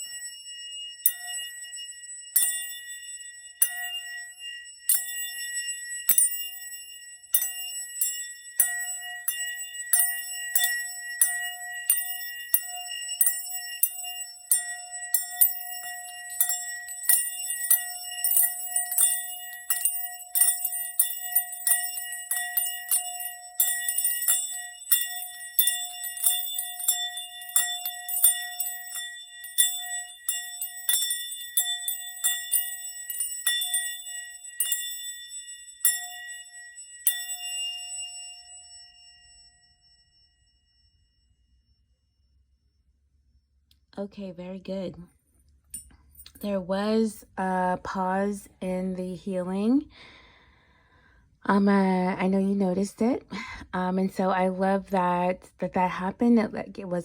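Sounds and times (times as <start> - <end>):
bells struck and ringing: 0.0 - 41.1.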